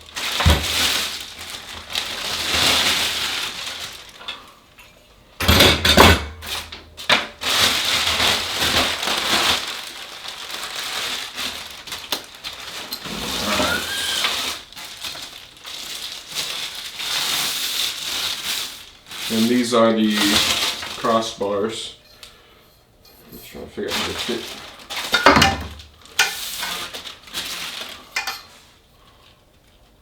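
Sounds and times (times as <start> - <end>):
packaging rustling and crinkling: 0.0 - 4.5, 6.4 - 21.5, 23.8 - 30.0.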